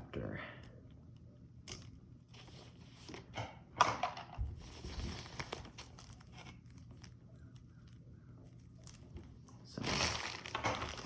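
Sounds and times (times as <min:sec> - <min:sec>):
packaging crinkling and rustling: 0:04.4 - 0:11.0.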